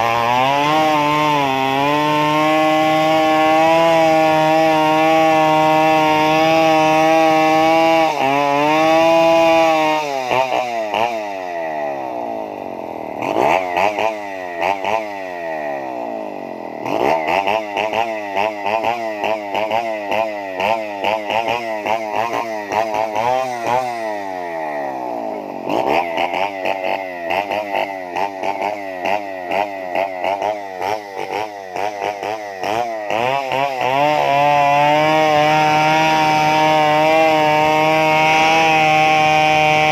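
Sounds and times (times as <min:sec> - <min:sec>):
chainsaw engine warbling: 0:00.0 - 0:39.9.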